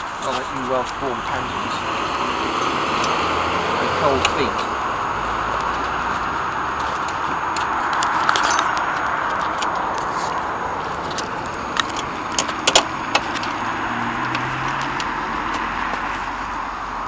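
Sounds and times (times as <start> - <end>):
road traffic noise: 0.0 - 17.0
metallic clinks of hand tools: 2.6 - 3.3, 7.9 - 9.7.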